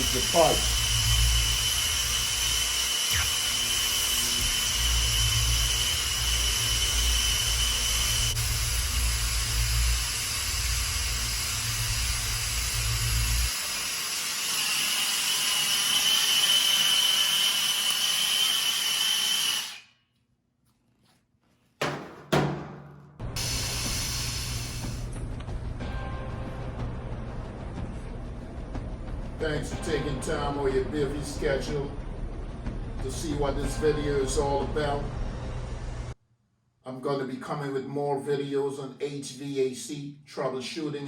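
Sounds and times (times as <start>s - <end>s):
torch flame hissing with whistle: 0.0s - 19.9s, 23.4s - 25.2s.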